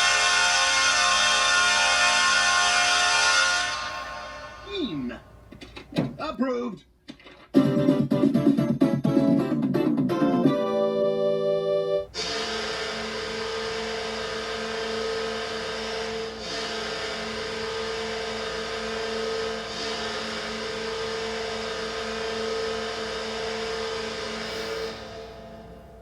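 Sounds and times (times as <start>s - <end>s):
goal horn blast: 0.0s - 4.6s
music: 7.6s - 12.1s.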